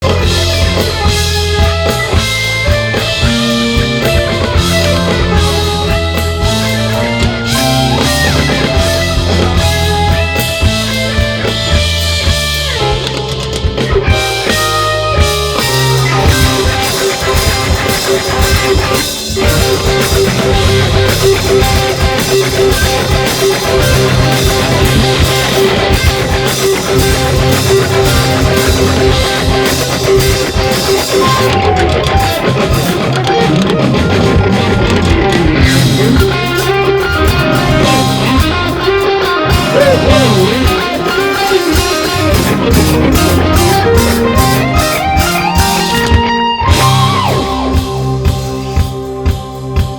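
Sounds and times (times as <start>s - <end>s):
electric guitar: 0.0s - 49.9s
rock band playing live: 0.0s - 49.9s.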